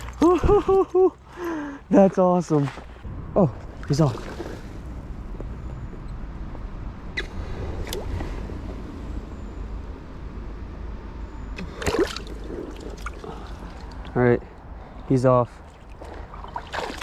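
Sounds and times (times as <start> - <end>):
creek water running: 11.6 - 14.2, 15.5 - 17.0
short water splashes: 11.6 - 14.2, 15.6 - 17.0.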